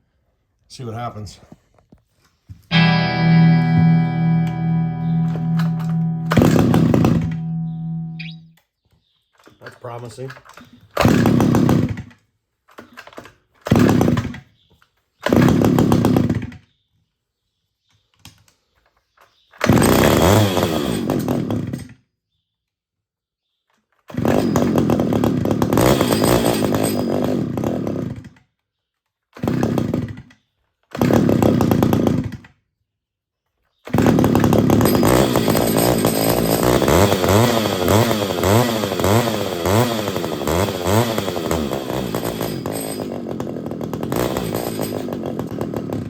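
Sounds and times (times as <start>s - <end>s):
chainsaw revving: 2.7s - 8.2s, 11.0s - 12.0s, 13.7s - 14.4s, 15.3s - 16.5s, 19.6s - 21.8s, 24.1s - 28.3s, 29.4s - 30.2s, 30.9s - 32.4s, 33.9s - 46.0s.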